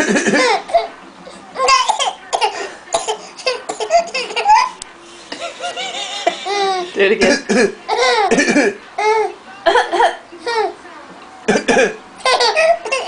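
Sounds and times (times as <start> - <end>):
baby laughing: 0.0 - 0.9, 1.6 - 8.3, 9.0 - 10.8, 12.2 - 13.0
family laughing: 3.4 - 10.8, 12.2 - 13.0.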